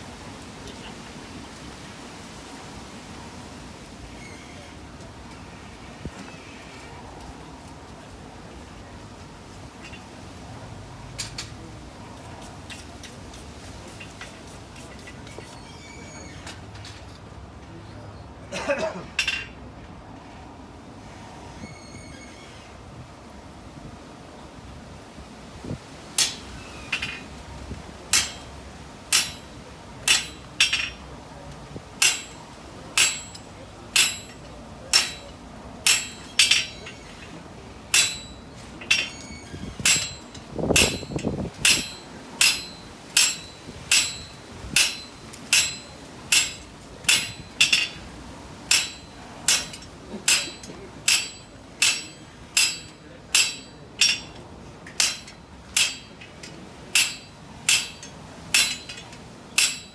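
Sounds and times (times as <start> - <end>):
hammer striking steel on anvil: 26.2 - 27.2, 28.1 - 31.0, 32.0 - 37.3, 37.9 - 48.1, 48.7 - 59.9.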